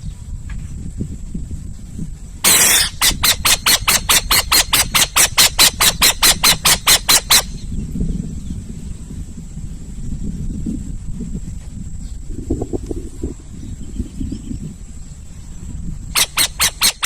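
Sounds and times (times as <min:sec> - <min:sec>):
owl screeching: 0:02.4 - 0:07.6, 0:16.2 - 0:17.0
low rumble: 0:07.6 - 0:16.1.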